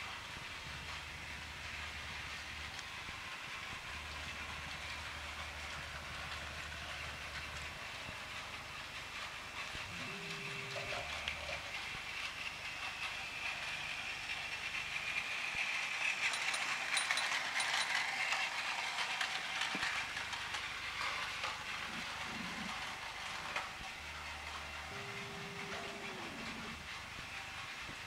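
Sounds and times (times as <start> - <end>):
toy train motor whirring: 0.0 - 28.0
rapid clicking of wheels: 11.3 - 28.0.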